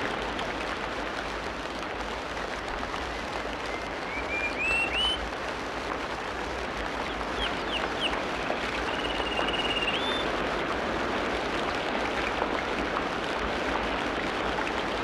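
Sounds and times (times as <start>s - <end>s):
steady rain-like hiss: 0.0s - 15.0s
small birds chirping: 7.1s - 10.2s.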